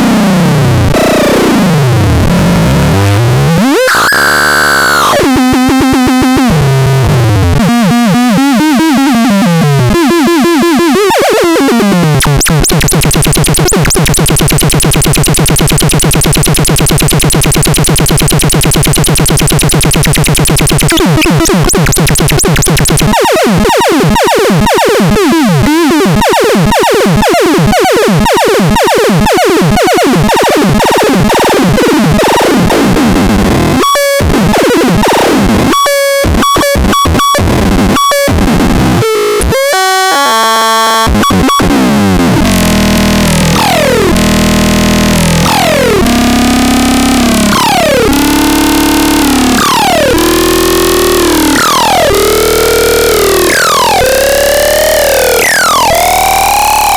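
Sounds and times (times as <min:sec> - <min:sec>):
stuttering synthesizer pulses: 0:12.1 - 0:24.9, 0:42.4 - 0:56.9
electronic beeps and chirps: 0:12.2 - 0:23.3, 0:45.4 - 0:56.9.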